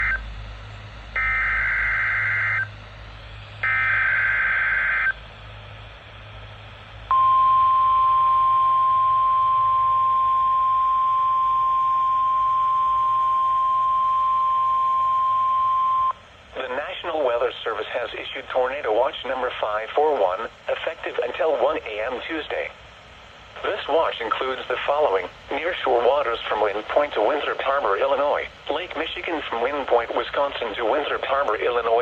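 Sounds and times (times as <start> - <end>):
steady warning alarm tone: 0.0 - 0.4, 1.1 - 2.8, 3.6 - 5.2, 7.1 - 16.2
receiver low hum: 0.0 - 32.0.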